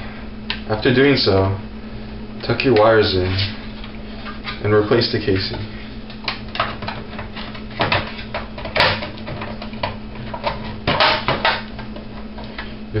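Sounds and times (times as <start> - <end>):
plastic casing knocks and clatters: 7.8 - 11.6.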